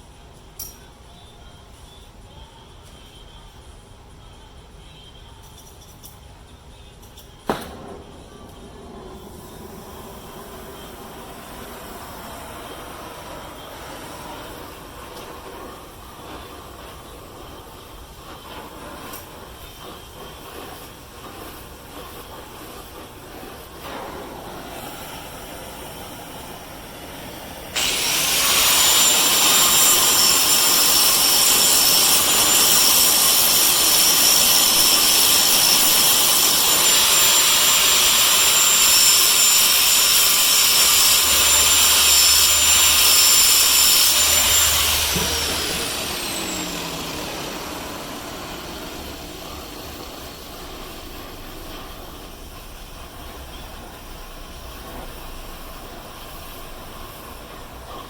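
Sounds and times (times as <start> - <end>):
power grinder whining: 27.8 - 51.6.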